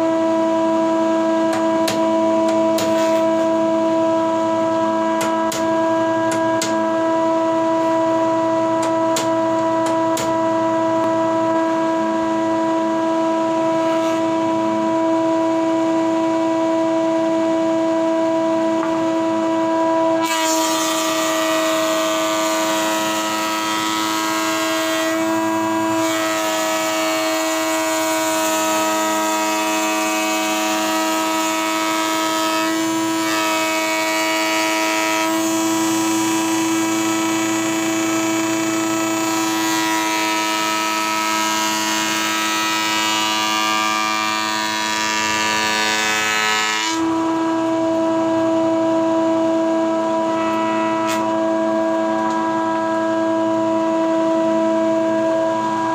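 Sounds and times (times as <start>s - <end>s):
table planer motor whining: 0.0s - 55.9s
cutter head planing wood: 20.2s - 48.3s.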